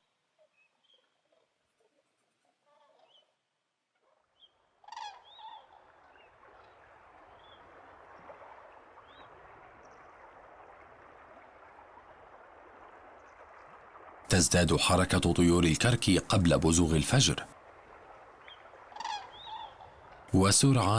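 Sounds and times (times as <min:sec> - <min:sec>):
bird calls: 0:04.3 - 0:10.2, 0:18.4 - 0:20.9.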